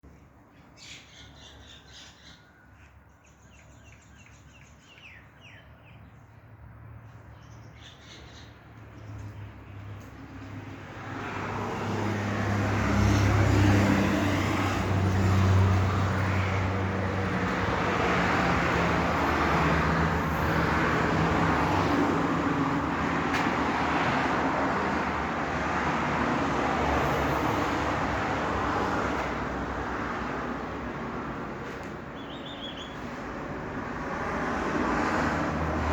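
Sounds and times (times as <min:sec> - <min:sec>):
engine humming and rushing: 0:09.1 - 0:32.1.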